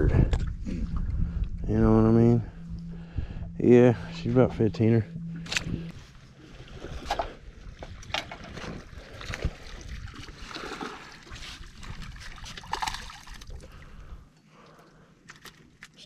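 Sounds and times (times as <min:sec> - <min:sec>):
wind noise: 0:00.0 - 0:14.2
water lapping against boat hull: 0:05.3 - 0:16.0.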